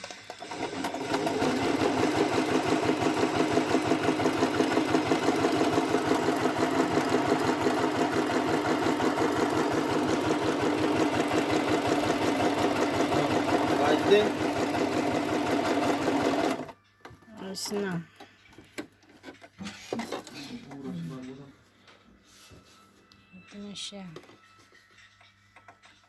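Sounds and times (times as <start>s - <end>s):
sewing machine clattering: 0.0s - 16.7s.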